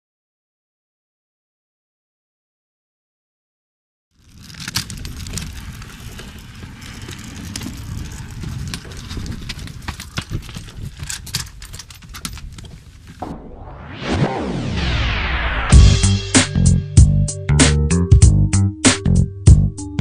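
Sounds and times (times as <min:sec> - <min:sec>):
steady low rumble: 0:12.6 - 0:18.5
falling electronic sweep: 0:13.2 - 0:17.0
music: 0:15.7 - 0:20.0.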